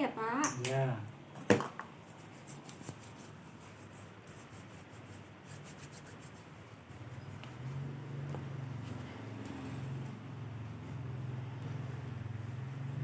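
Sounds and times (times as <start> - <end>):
hands rubbing together: 2.0 - 7.7.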